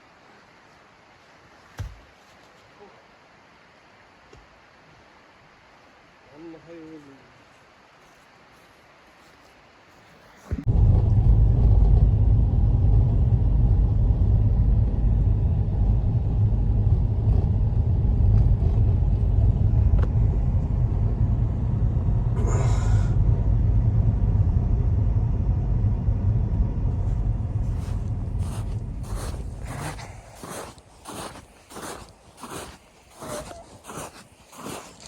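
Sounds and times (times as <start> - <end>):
blizzard wind on microphone: 10.6 - 35.0.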